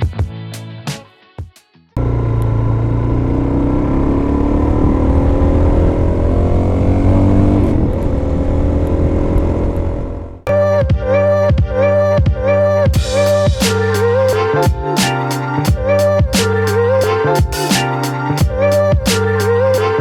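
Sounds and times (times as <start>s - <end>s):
motorcycle engine accelerating: 2.0s - 10.5s.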